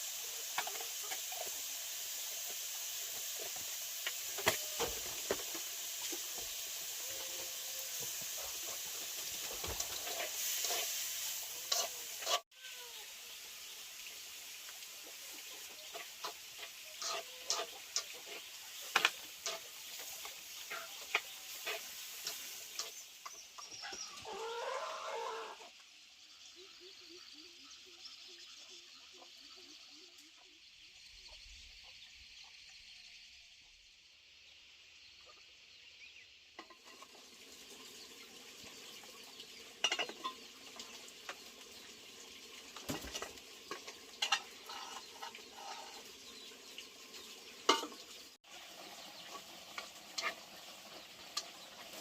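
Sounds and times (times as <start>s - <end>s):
food sizzling in a pan: 0.0s - 52.0s
utensil stirring and scraping: 7.1s - 12.5s, 15.9s - 23.8s.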